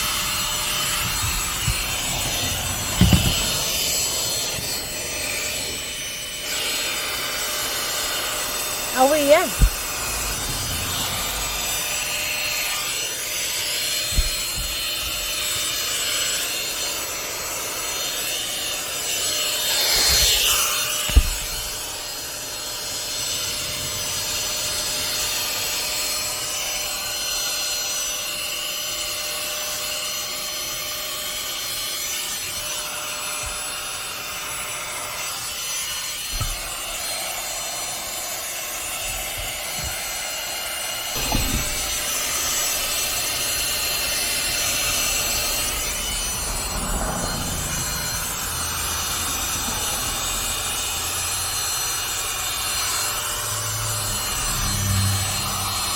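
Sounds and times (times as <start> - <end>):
vacuum cleaner running: 0.0 - 55.9
sharp knock: 3.0 - 3.6.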